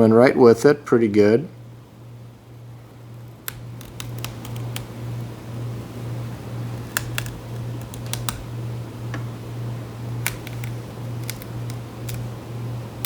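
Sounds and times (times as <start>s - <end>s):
low electrical hum: 0.0s - 13.0s
rubber strip peeling clicks: 3.2s - 5.0s, 6.7s - 8.6s, 10.2s - 12.4s.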